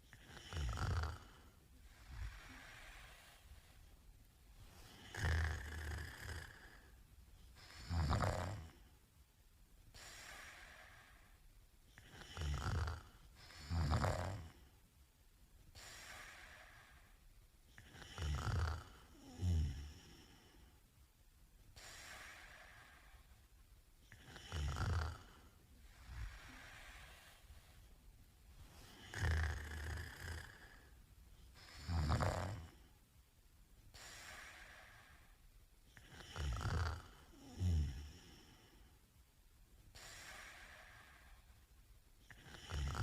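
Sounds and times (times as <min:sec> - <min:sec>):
quiet breathing: 0:00.0 - 0:43.0
man snoring: 0:00.1 - 0:01.5, 0:04.9 - 0:06.9, 0:07.7 - 0:08.8, 0:12.0 - 0:14.6, 0:17.8 - 0:20.5, 0:24.1 - 0:27.2, 0:28.9 - 0:30.9, 0:31.6 - 0:32.8, 0:36.0 - 0:38.7, 0:42.3 - 0:43.0.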